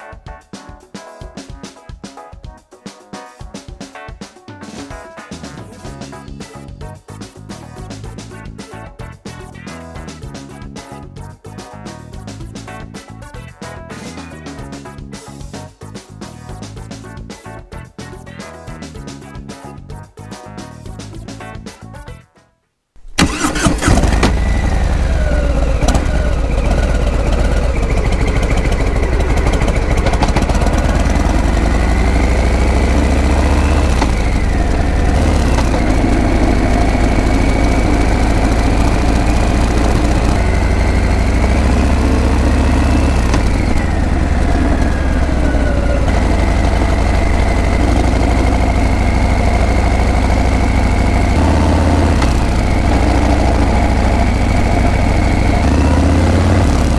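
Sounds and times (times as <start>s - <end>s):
motorcycle engine rumbling: 23.0s - 56.9s.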